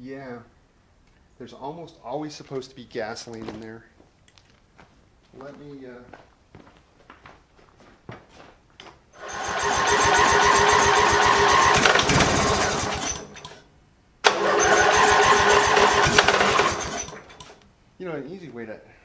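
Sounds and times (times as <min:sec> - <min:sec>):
engine cranking with starter whine: 0:09.2 - 0:17.6.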